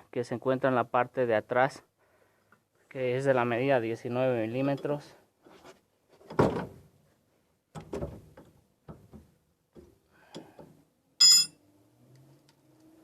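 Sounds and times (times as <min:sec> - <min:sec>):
ringing metallic clink: 0:11.2 - 0:11.6.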